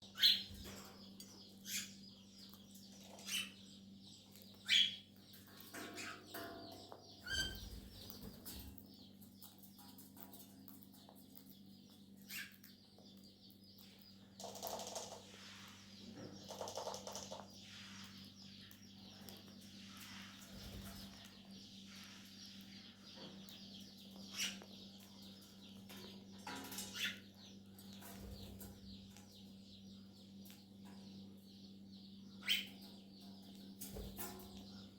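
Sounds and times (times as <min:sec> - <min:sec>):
cockatiels chirping: 0:00.1 - 0:00.9, 0:01.6 - 0:05.1, 0:05.8 - 0:08.7, 0:12.2 - 0:13.2, 0:24.0 - 0:24.7, 0:26.7 - 0:27.3, 0:32.4 - 0:32.8.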